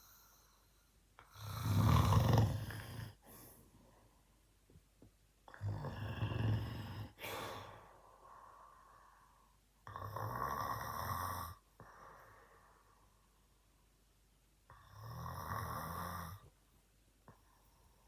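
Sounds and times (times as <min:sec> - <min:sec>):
soft breath: 0:00.0 - 0:01.4, 0:07.0 - 0:09.7, 0:11.8 - 0:13.6
man snoring: 0:01.3 - 0:03.3, 0:05.5 - 0:07.6, 0:09.9 - 0:11.6, 0:14.7 - 0:16.4.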